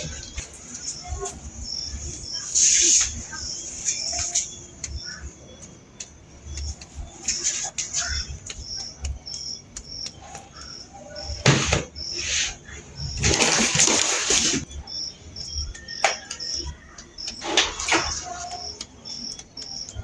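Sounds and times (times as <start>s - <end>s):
cricket chirping: 0.0s - 20.0s.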